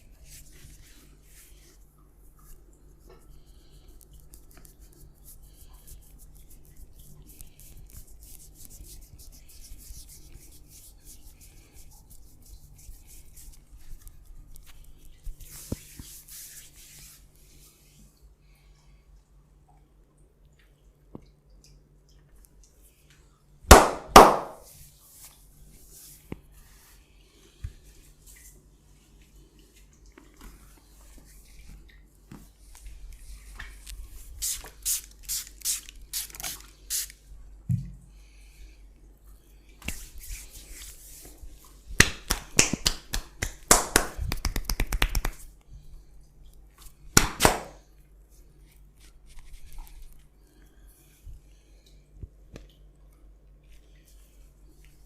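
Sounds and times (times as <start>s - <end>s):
hands slapping on skin: 23.7s - 24.7s, 42.0s - 45.5s, 47.1s - 47.8s.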